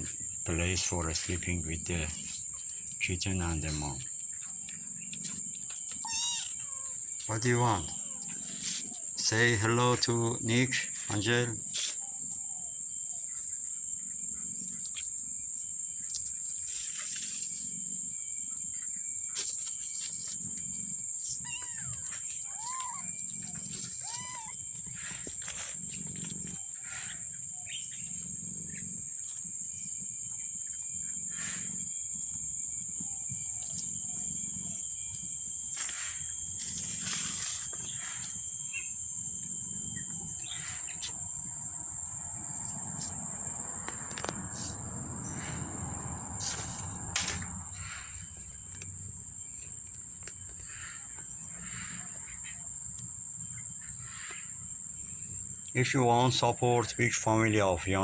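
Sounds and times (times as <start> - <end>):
crickets chirring: 0.0 - 58.0
kitten mewing: 6.0 - 7.0, 21.4 - 24.7.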